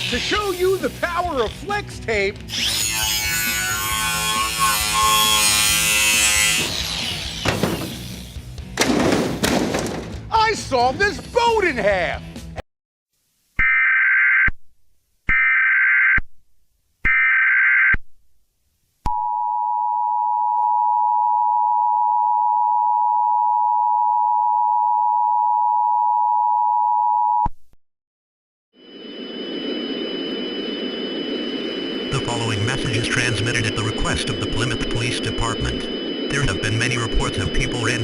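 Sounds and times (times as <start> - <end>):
two-tone attention signal: 28.8 - 38.0
data header bursts: 31.2 - 38.0.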